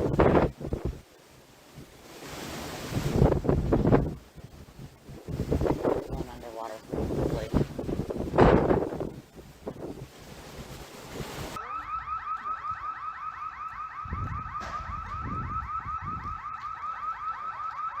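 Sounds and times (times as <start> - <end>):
wind buffeting microphone: 0.0 - 1.1, 1.8 - 12.1, 13.8 - 16.8
car alarm chirping: 11.6 - 18.0.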